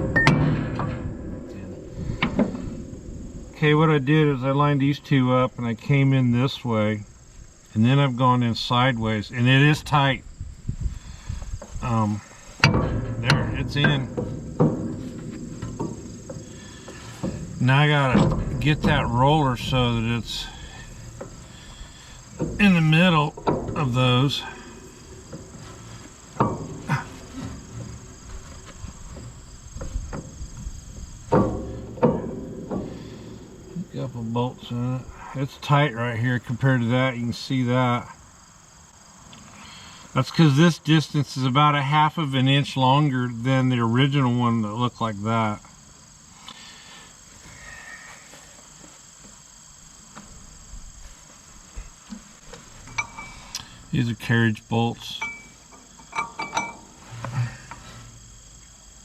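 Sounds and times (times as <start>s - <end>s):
sharp metal knocks: 0.0s - 4.8s, 11.0s - 35.9s, 52.8s - 54.1s, 54.7s - 58.4s
insects chirring: 0.0s - 59.0s.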